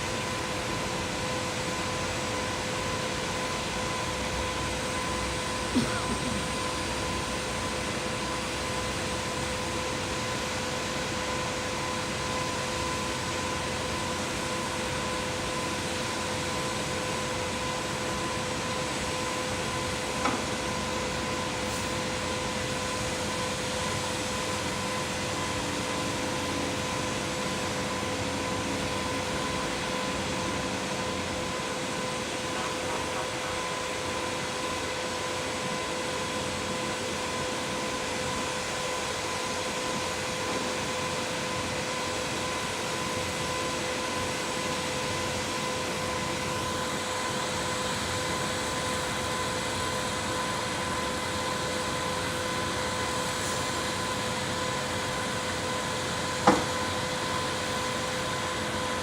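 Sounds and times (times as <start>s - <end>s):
machinery running with whine: 0.0s - 59.0s.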